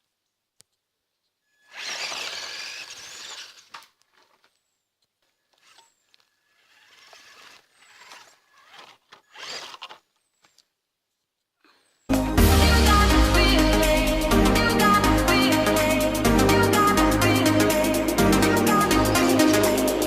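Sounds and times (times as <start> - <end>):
rc truck motor whine: 1.6 - 4.0, 5.5 - 10.1.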